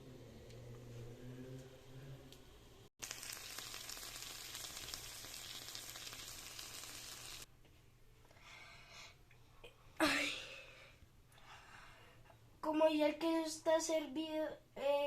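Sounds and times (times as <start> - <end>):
food sizzling in a frying pan: 3.0 - 7.5.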